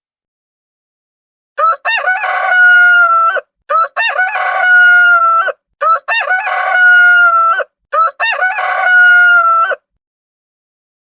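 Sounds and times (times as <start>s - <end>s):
rooster crowing: 1.6s - 9.8s.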